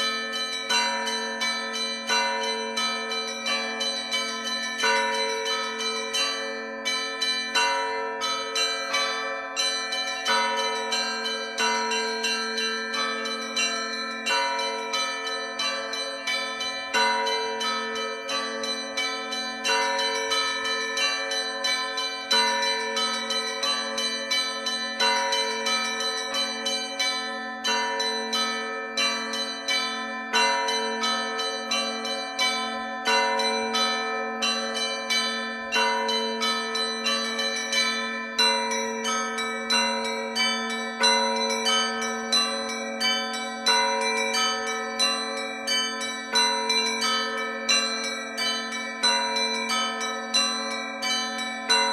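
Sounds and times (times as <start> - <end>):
small bells chiming rapidly: 0.0 - 51.9.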